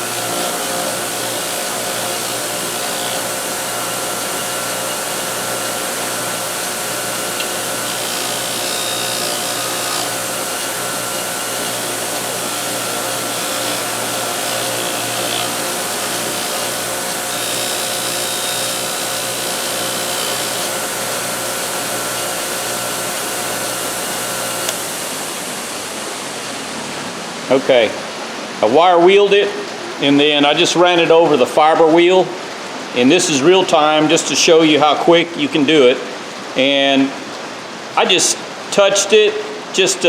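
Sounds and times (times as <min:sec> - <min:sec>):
bench grinder motor hum: 0:00.0 - 0:27.4
metal grinding hiss: 0:00.0 - 0:27.6.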